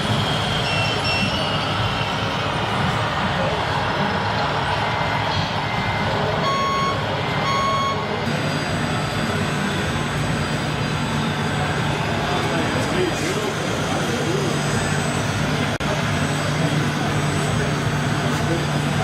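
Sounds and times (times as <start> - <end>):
reversing alarm beeps: 0.4 - 1.7, 6.4 - 8.3.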